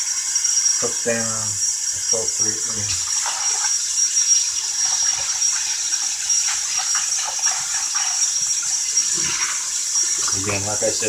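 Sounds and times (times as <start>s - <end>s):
steady high hiss: 0.0s - 4.6s.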